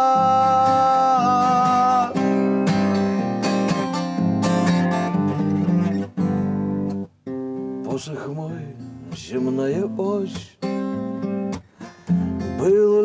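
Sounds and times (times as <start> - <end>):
acoustic guitar strumming: 0.0 - 13.0.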